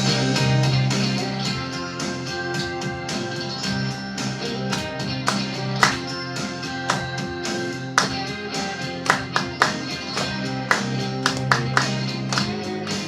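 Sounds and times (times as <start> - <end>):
held music chords: 0.0 - 13.0.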